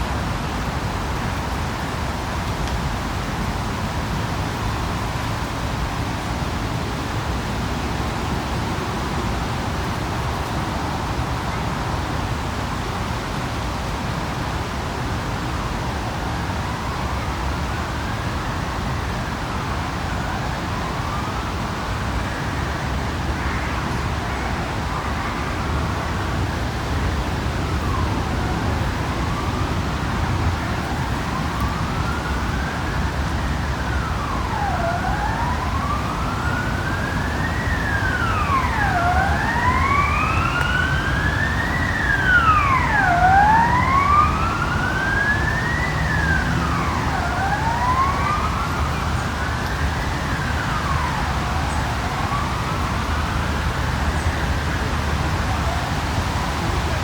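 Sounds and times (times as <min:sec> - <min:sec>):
city traffic rumble: 0:00.0 - 0:57.0
emergency siren wailing: 0:16.3 - 0:57.0.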